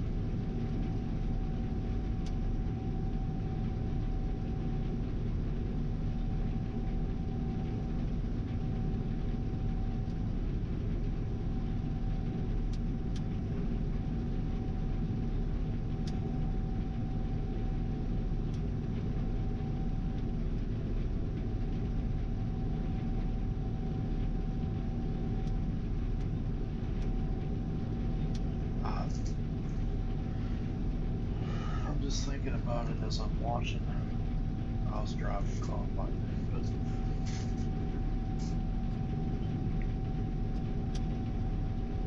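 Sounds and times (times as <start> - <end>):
combine harvester drone: 0.0 - 42.0
steady whine: 0.0 - 42.0
faint ticks: 12.7 - 13.4, 16.0 - 16.2, 26.9 - 27.2, 28.2 - 28.5.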